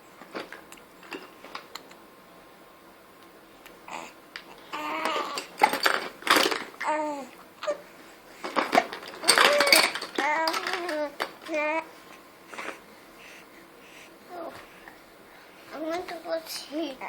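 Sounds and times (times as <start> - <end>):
baby cooing and babbling: 3.9 - 5.5, 6.8 - 7.8, 9.2 - 11.9, 14.3 - 14.7.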